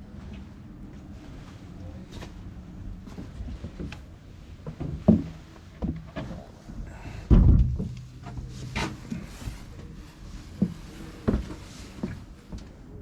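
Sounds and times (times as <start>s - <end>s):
heavy low thump: 7.2s - 8.6s.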